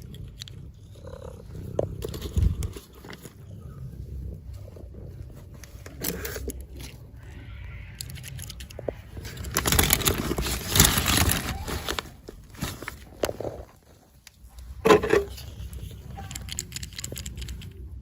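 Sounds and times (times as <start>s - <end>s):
toy packaging crinkling and tearing: 7.9s - 17.7s.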